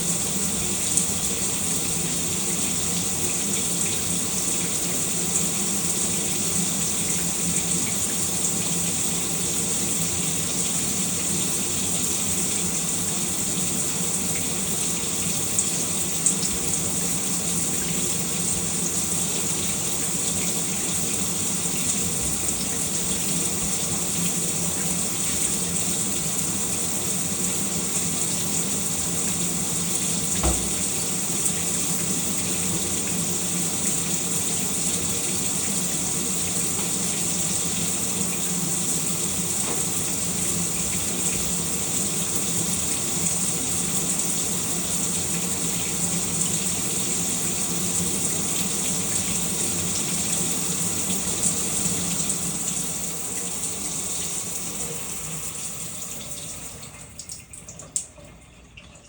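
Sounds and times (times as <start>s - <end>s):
faint drips: 10.6s - 59.0s
shower water spraying: 12.2s - 57.2s.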